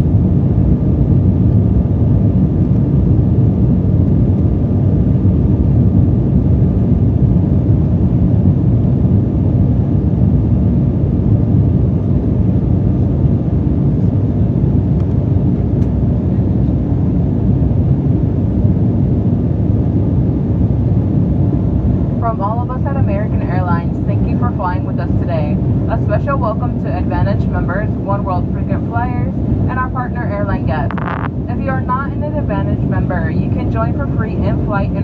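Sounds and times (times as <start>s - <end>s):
jet cabin roar: 0.0s - 35.0s
faint steady whine: 12.8s - 35.0s.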